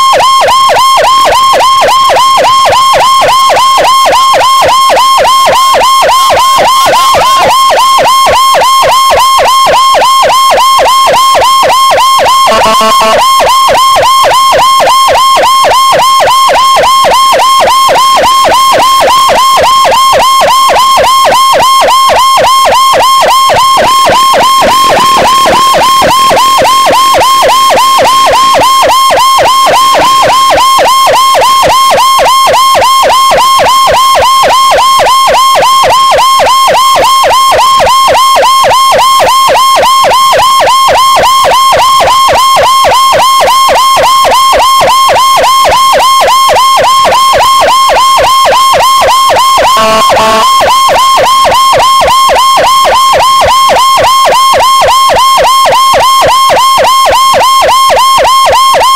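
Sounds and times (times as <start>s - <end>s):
low-pitched siren blast: 12.4s - 13.9s, 49.6s - 51.0s
electronic siren yelping: 12.4s - 14.0s, 21.8s - 34.4s, 45.8s - 51.0s.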